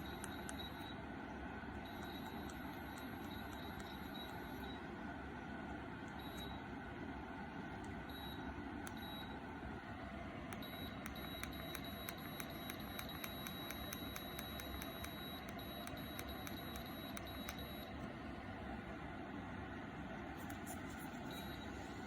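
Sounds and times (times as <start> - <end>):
electronic beeps: 10.6 - 17.9, 21.2 - 21.8.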